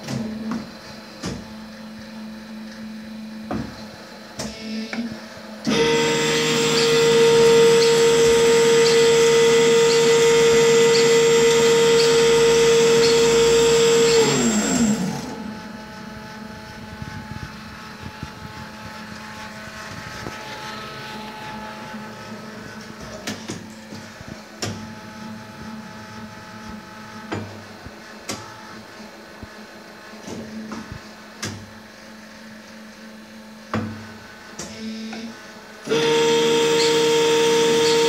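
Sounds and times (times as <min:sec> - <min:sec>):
small electric motor whining: 0:05.7 - 0:22.0, 0:35.9 - 0:38.0.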